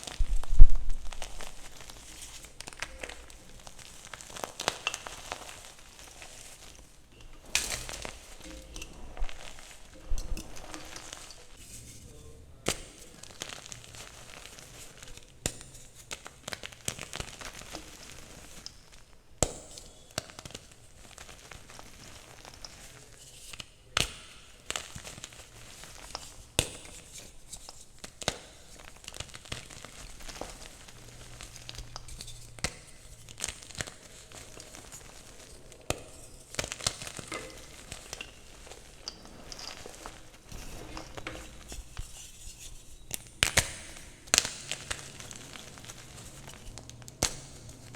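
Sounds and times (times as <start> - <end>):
chalk being crushed by hand: 12.7 - 47.9.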